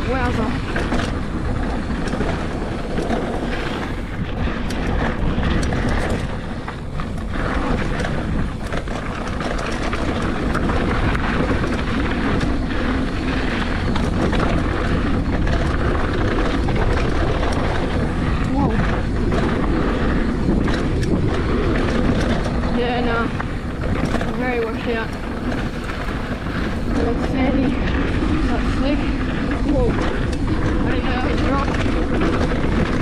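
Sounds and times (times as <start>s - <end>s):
bike rattling over bumps: 0.0s - 33.0s
bike tyres on dirt trail: 0.0s - 33.0s
wind rumble on microphone: 0.0s - 33.0s.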